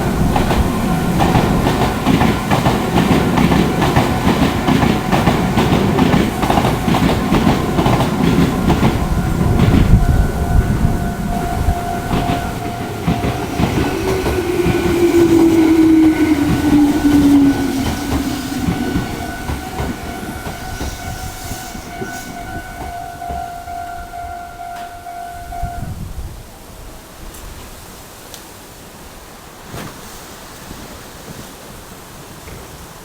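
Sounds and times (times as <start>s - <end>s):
train wheels clacking over rail joints: 0.0s - 23.9s
level crossing warning alarm: 0.0s - 26.0s.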